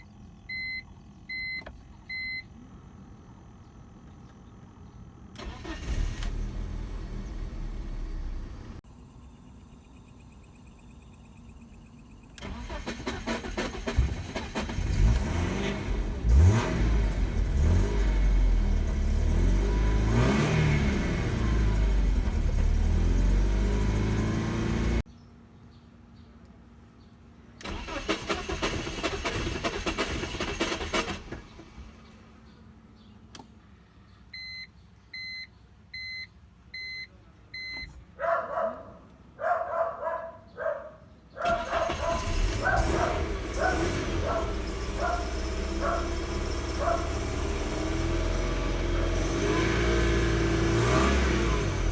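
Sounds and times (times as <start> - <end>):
car warning beeps: 0.0 - 2.6, 34.3 - 38.0
car engine starting and revving: 5.4 - 8.8, 12.4 - 25.1, 27.6 - 32.4, 41.4 - 51.9.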